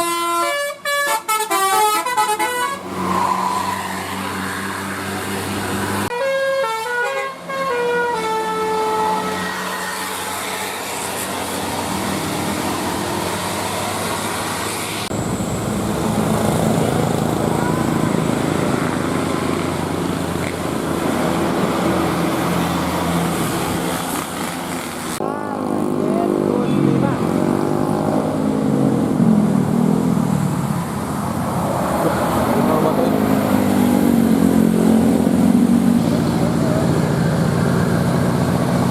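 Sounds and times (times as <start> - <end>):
buses driving past: 0.0 - 38.9.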